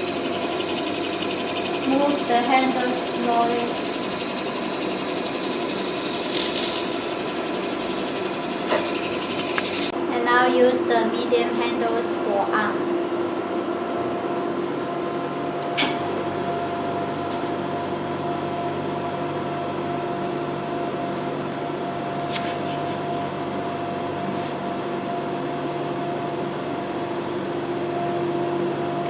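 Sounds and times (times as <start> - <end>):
massage machine pump humming: 0.0 - 10.0.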